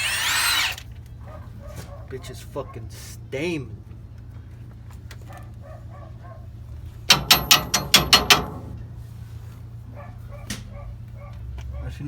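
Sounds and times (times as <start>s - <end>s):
hammer striking steel: 7.1s - 9.2s.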